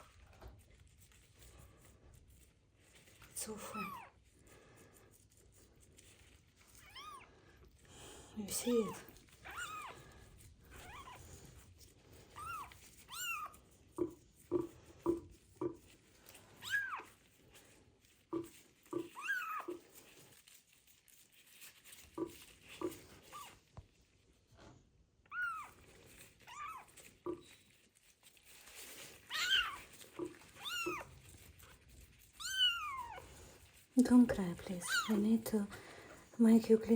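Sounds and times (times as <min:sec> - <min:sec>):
kitten meowing: 0:08.8 - 0:10.0, 0:10.7 - 0:11.2, 0:12.3 - 0:13.6, 0:16.6 - 0:17.1, 0:18.9 - 0:19.8, 0:25.3 - 0:25.8, 0:26.5 - 0:27.4, 0:29.3 - 0:31.2, 0:32.4 - 0:33.2, 0:34.8 - 0:35.2.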